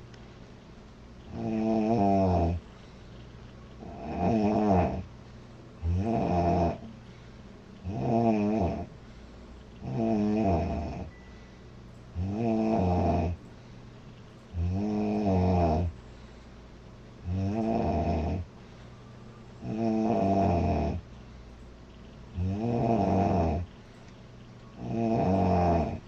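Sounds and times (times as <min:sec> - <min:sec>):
woman snoring loudly: 0:01.3 - 0:02.6, 0:03.8 - 0:05.0, 0:05.8 - 0:06.9, 0:07.9 - 0:08.9, 0:09.8 - 0:11.1, 0:12.2 - 0:13.4, 0:14.6 - 0:15.9, 0:17.3 - 0:18.5, 0:19.6 - 0:21.0, 0:22.4 - 0:23.7, 0:24.8 - 0:26.0.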